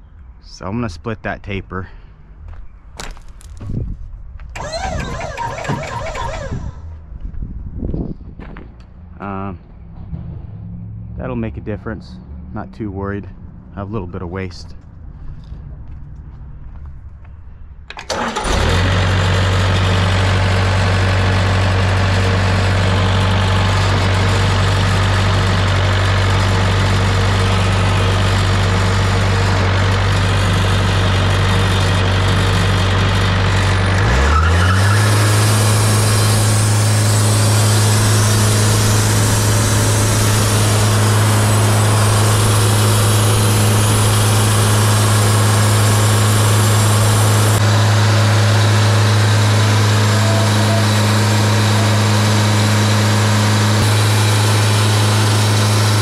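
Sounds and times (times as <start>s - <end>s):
band sawmill engine running: 4.4s - 7.1s, 17.9s - 56.0s.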